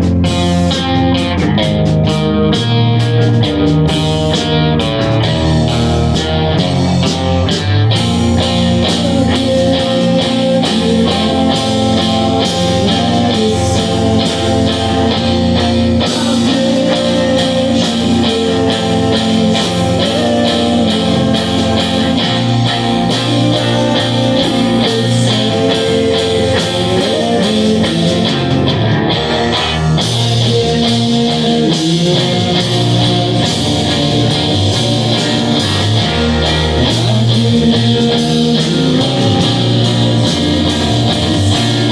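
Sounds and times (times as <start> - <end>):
live rock band playing: 0.0 - 41.9.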